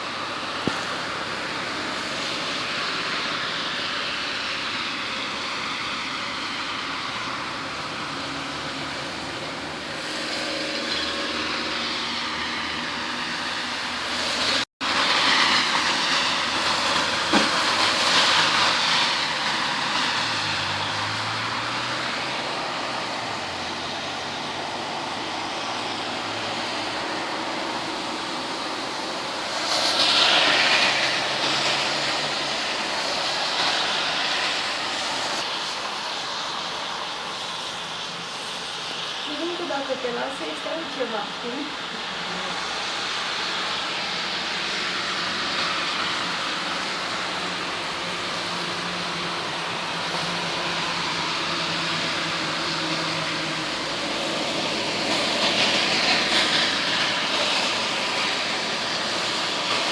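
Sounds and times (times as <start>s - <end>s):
steady rushing noise: 12.0s - 59.9s.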